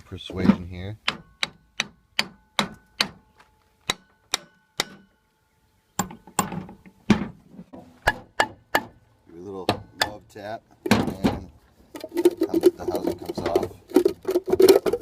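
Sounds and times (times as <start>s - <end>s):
hammer tapping on pump housing: 0.5s - 5.2s, 6.0s - 7.3s, 8.0s - 9.0s, 9.6s - 11.3s.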